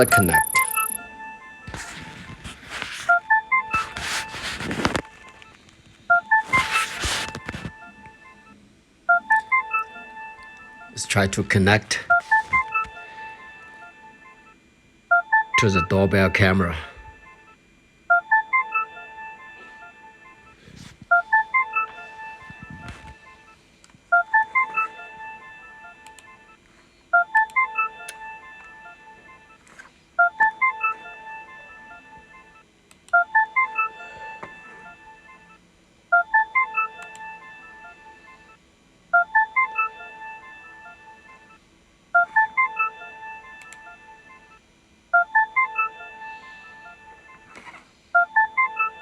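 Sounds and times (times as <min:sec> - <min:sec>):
electronic beep tones: 0:00.0 - 0:01.1.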